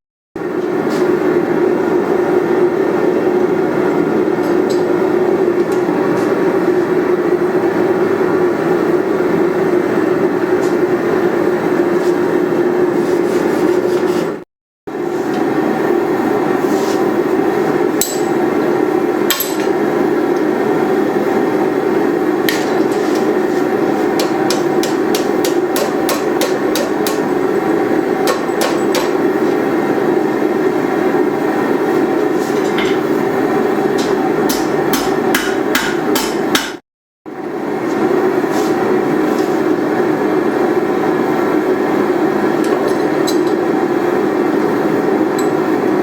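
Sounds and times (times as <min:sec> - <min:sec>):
hammer striking hot steel: 0:18.0 - 0:18.4, 0:19.3 - 0:19.7, 0:24.1 - 0:27.3, 0:28.2 - 0:29.2, 0:34.0 - 0:36.8.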